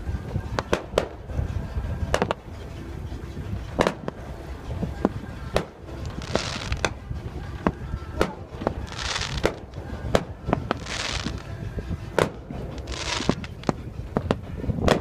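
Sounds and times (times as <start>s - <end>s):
fireworks bangs and pops: 0.5s - 1.2s, 2.1s - 2.4s, 3.8s - 4.2s, 5.0s - 7.0s, 7.6s - 11.5s, 12.1s - 15.0s
fireworks crackling hiss: 5.0s - 6.9s, 8.5s - 11.6s, 12.6s - 14.4s.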